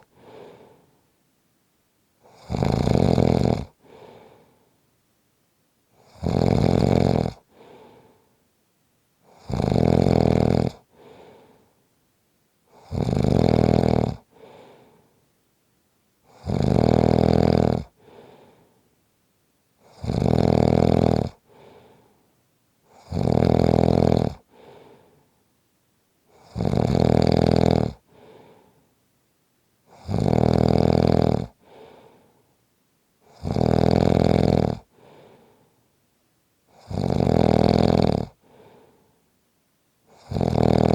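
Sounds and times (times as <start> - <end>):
person snoring: 2.2 - 4.4, 6.0 - 7.9, 9.3 - 11.4, 12.7 - 14.9, 16.3 - 18.4, 19.8 - 22.0, 22.9 - 25.1, 26.3 - 28.7, 29.9 - 32.2, 33.3 - 35.5, 36.7 - 39.0, 40.1 - 40.9.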